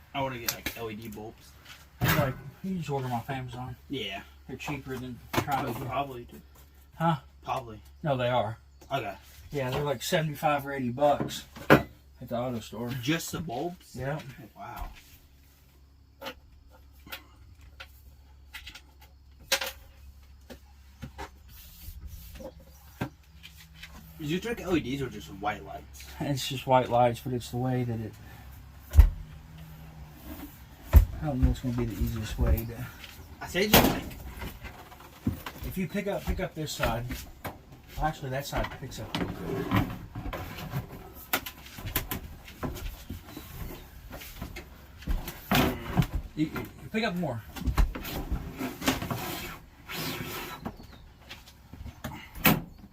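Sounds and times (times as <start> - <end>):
toolbox knocks and clunks: 11.2 - 12.0.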